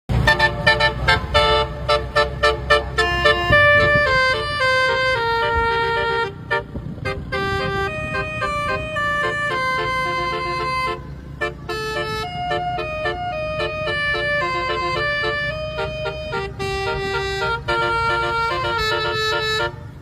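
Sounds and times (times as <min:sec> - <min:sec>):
multi-tone horn playing a tune: 0:00.2 - 0:20.0.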